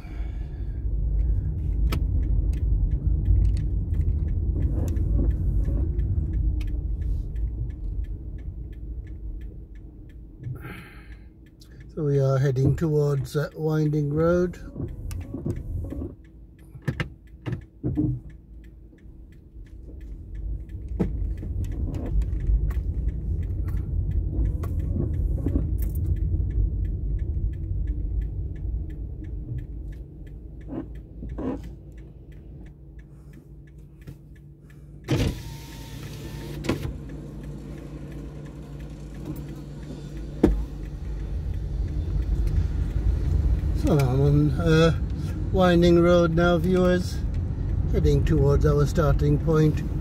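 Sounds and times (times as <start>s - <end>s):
engine and road rumble: 0.0s - 50.0s
small rattles and clicks: 11.5s - 35.1s, 36.8s - 50.0s.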